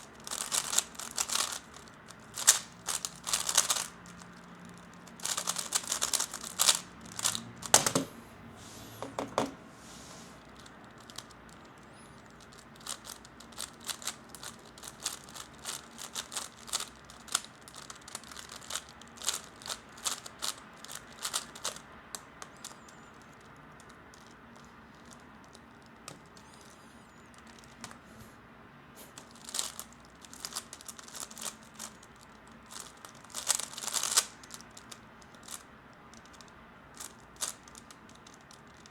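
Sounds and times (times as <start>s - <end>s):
plastic puzzle cube clicking: 0.0s - 8.1s, 10.6s - 26.4s, 29.2s - 38.9s.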